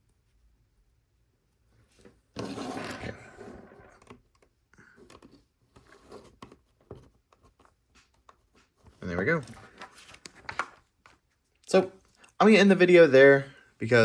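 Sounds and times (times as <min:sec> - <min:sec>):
rustling and scraping: 0:01.6 - 0:12.1.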